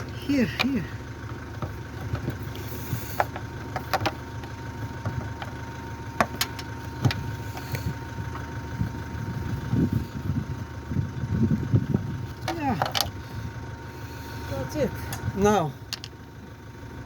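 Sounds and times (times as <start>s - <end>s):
steady low hum: 0.0s - 17.0s
tools clicking and knocking: 3.2s - 4.2s.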